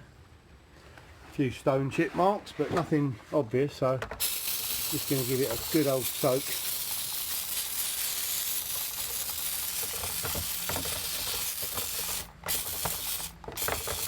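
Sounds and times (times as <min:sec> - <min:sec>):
aerosol spray hissing: 0:04.2 - 0:14.0.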